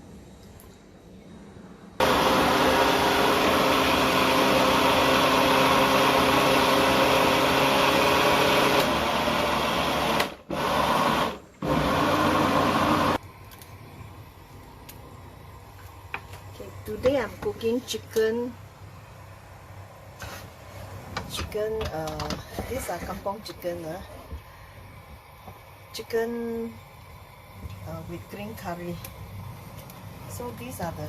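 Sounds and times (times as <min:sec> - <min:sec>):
electric blender running: 0:02.0 - 0:13.2.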